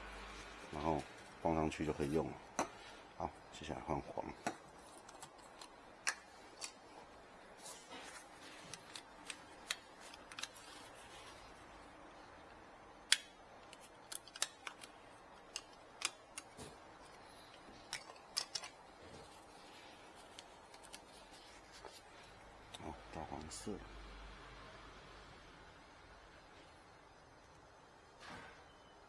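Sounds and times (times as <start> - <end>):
plastic parts clicking and tapping: 13.1 - 19.3.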